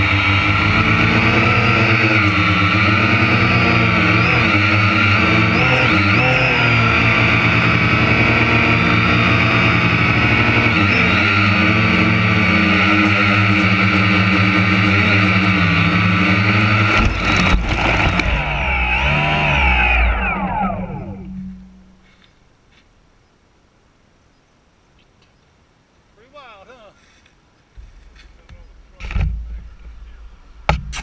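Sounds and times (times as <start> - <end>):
machine engine whining: 0.0 - 22.1.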